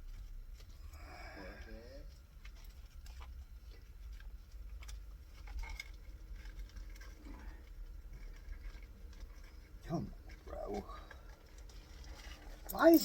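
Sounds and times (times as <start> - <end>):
low steady hum: 0.0 - 13.0
small parts clicking and tapping: 11.6 - 13.0.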